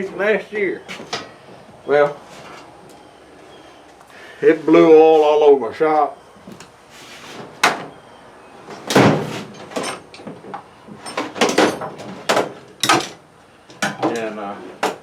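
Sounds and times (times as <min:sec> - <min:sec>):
hard objects knocking and clunking: 0:08.9 - 0:15.0.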